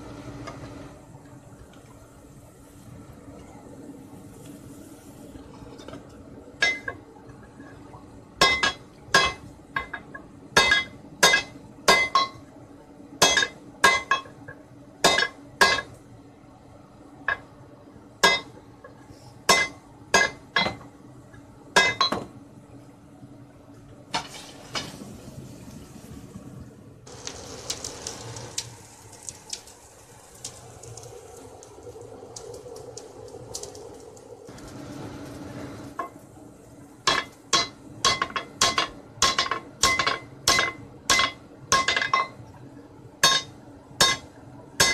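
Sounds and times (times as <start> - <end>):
sledgehammer striking steel bar: 43.2 - 44.2.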